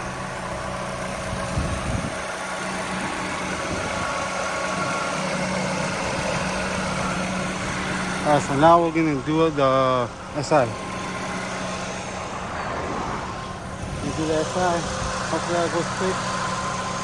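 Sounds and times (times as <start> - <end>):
car engine idling: 0.0 - 17.0.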